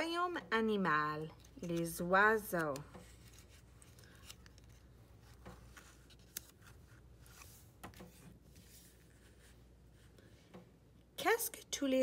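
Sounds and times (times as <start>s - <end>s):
paper rustling: 1.4s - 9.6s.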